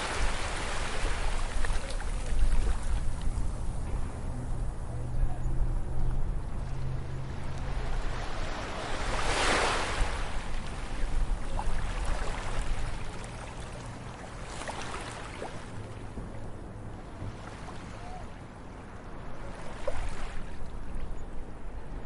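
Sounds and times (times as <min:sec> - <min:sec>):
ocean surf washing onto beach: 0:00.0 - 0:04.7, 0:06.5 - 0:16.3
steady low rumble: 0:01.1 - 0:09.0.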